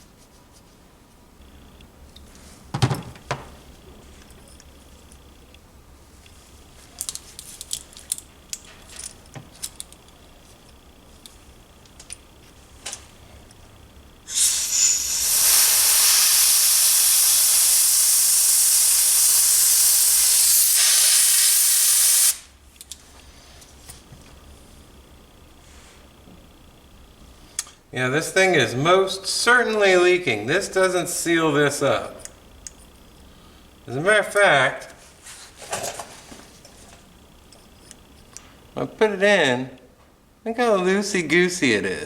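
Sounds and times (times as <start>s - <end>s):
air hissing from blowing: 14.2s - 22.5s.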